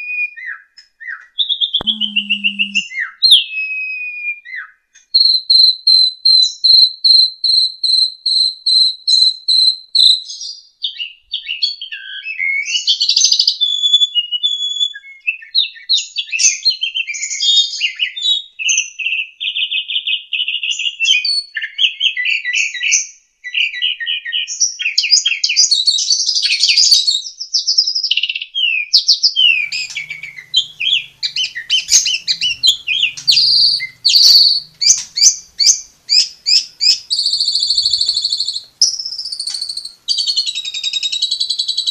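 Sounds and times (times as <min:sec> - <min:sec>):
starling singing: 0:01.8 - 0:02.9, 0:29.4 - 0:41.9.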